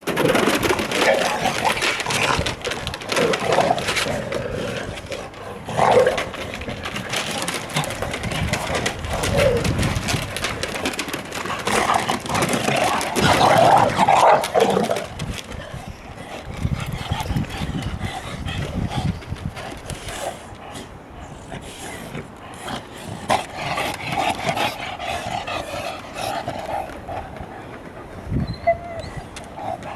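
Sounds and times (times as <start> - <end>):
wind buffeting microphone: 0.1 - 29.9
puppies giving short calls: 28.4 - 29.9.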